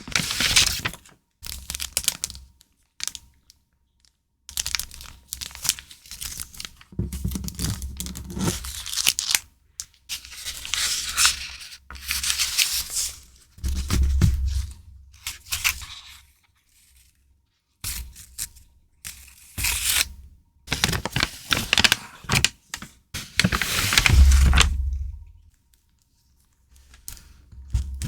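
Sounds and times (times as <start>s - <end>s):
packaging rustling and tearing: 0.0s - 2.4s, 7.5s - 9.4s, 20.7s - 25.2s.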